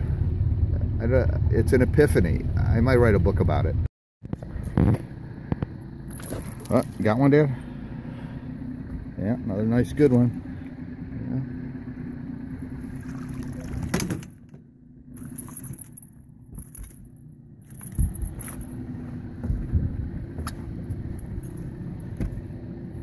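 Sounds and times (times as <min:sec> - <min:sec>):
small boat motor running: 0:00.0 - 0:23.0.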